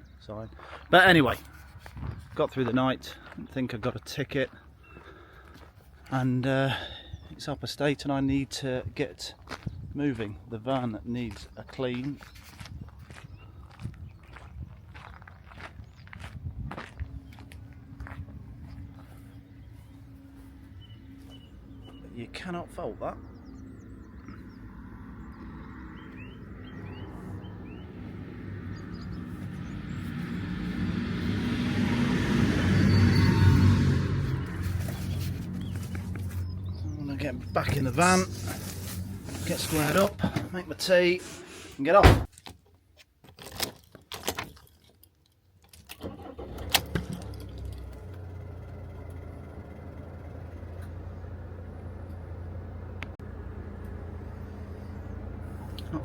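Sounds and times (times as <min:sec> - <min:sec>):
vehicle approaching: 0:13.1 - 0:41.7, 0:46.0 - 0:56.0
bird chirps: 0:19.0 - 0:22.2, 0:23.0 - 0:30.3
engine starting and idling: 0:46.0 - 0:52.7.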